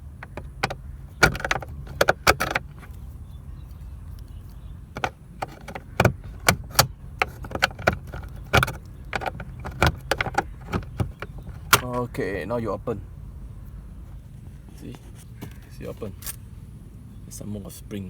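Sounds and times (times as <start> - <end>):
glove box latch plastic clicks: 0.0 - 12.1.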